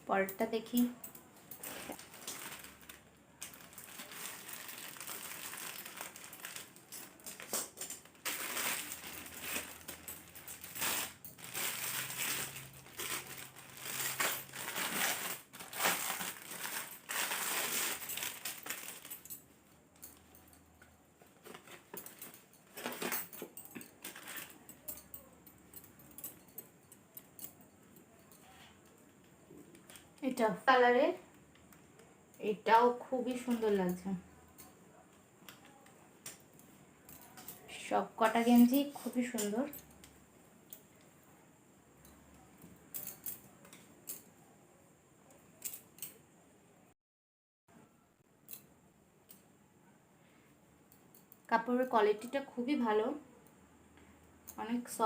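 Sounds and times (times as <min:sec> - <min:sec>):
packaging rustling and crackling: 0:01.5 - 0:19.4, 0:21.3 - 0:25.0.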